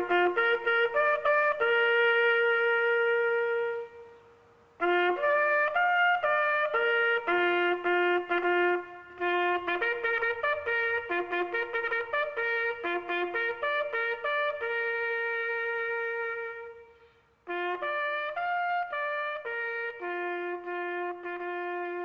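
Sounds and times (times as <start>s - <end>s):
solo brass melody: 0.0s - 22.0s.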